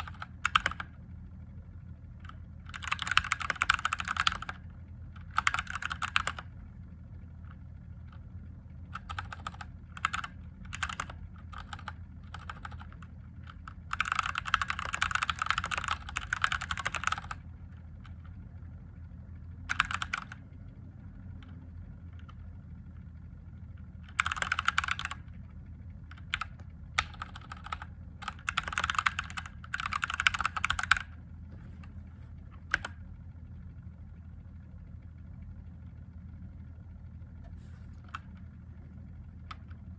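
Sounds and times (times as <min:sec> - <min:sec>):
mechanical keyboard typing: 0:00.0 - 0:00.9, 0:02.2 - 0:04.6, 0:05.2 - 0:06.6, 0:08.9 - 0:17.4, 0:19.7 - 0:20.4, 0:24.0 - 0:25.2, 0:26.1 - 0:31.2, 0:32.6 - 0:33.0
steady low hum: 0:00.0 - 0:39.9.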